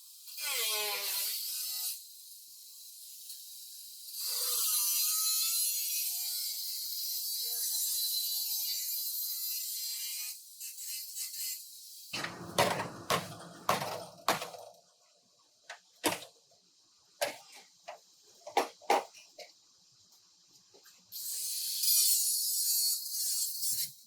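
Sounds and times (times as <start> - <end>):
tools knocking on car bodywork: 12.2 - 14.6.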